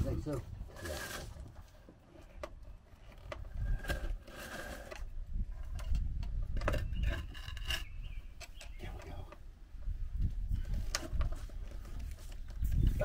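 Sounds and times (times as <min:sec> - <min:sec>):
parts scraping: 0:00.2 - 0:09.0.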